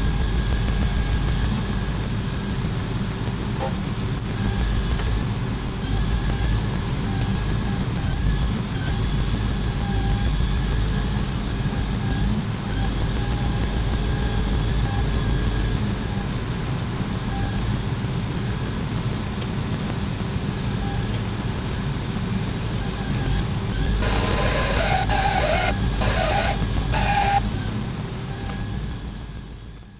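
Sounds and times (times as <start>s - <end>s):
rushing hissing noise: 24.0s - 27.4s.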